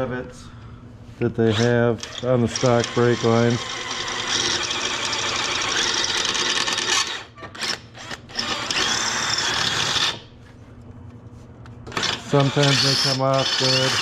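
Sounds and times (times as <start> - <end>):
power drill boring metal: 1.5 - 10.2, 11.9 - 14.0.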